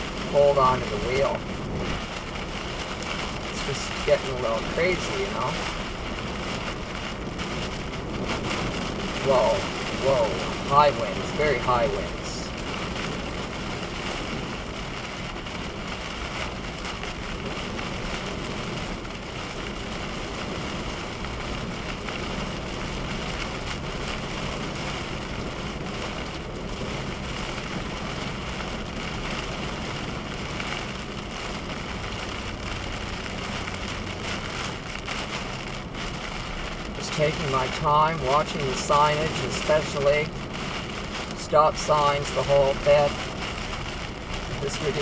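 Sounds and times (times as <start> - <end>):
heavy rain beating on car: 0.0 - 45.0
road and engine noise: 0.0 - 45.0.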